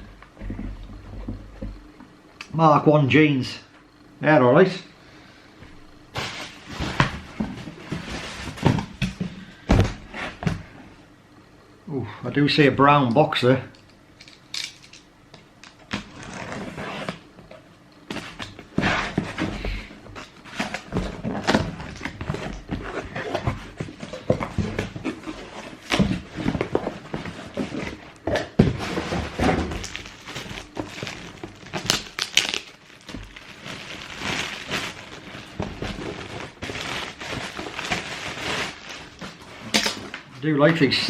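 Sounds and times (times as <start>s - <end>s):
cardboard rustling: 18.1s - 40.2s.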